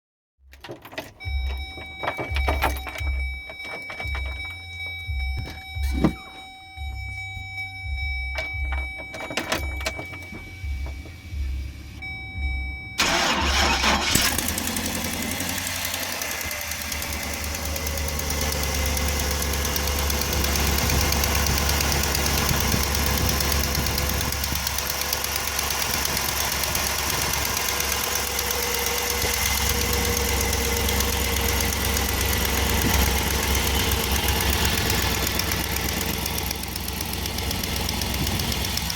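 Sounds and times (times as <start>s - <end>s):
van engine starting and idling: 0.4s - 38.9s
steady high tone: 1.3s - 14.2s.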